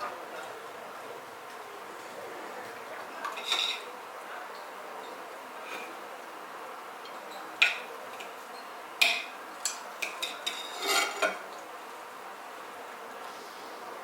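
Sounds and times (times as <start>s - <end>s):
dishes and cutlery clinking: 3.2s - 3.9s, 7.0s - 11.4s.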